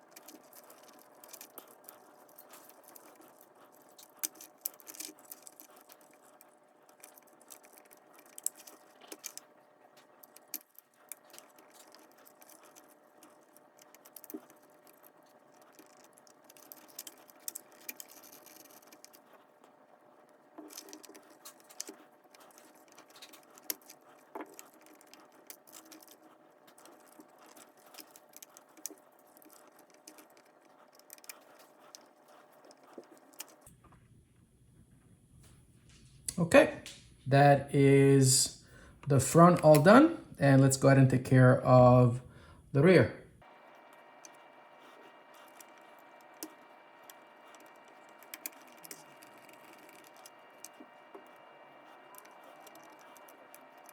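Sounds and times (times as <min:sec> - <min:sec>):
small metal parts clicking: 0:00.0 - 0:19.5, 0:20.2 - 0:33.7, 0:44.2 - 0:53.9.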